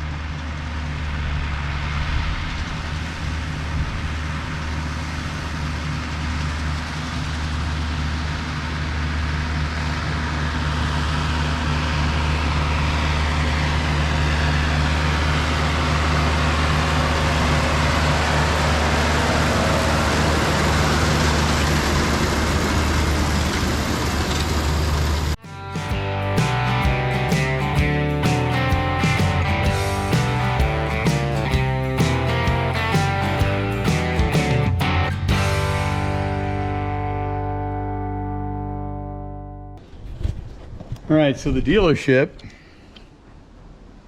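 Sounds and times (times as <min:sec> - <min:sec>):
baler mechanical rushing noise: 0:00.0 - 0:25.4
tractor engine running under load: 0:00.0 - 0:40.9.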